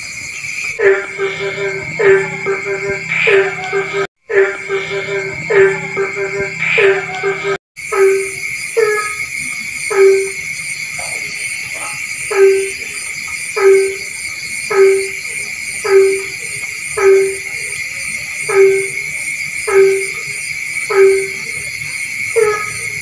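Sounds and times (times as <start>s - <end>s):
frog calling: 0.0s - 23.0s
night insects chorus: 0.0s - 23.0s.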